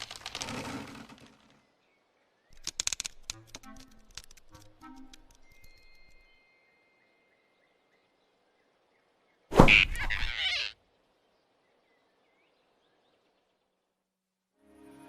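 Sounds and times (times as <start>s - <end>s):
loud thunk sound effect: 9.5s - 10.0s.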